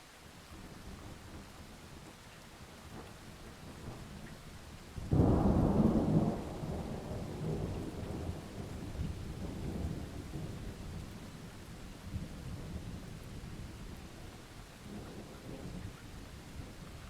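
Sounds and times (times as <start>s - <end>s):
steady rain: 0.0s - 17.0s
thunder crack and rumble: 5.0s - 11.5s.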